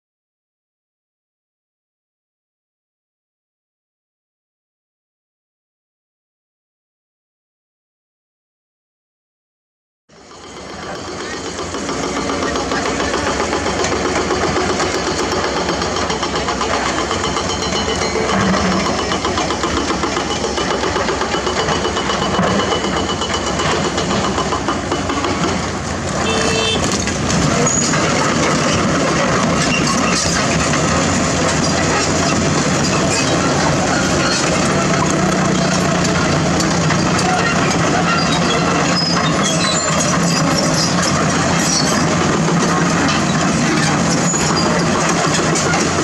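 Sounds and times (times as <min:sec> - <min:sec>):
excavator diesel engine: 0:10.1 - 0:46.0
hydraulic breaker hammering rock: 0:10.3 - 0:46.0.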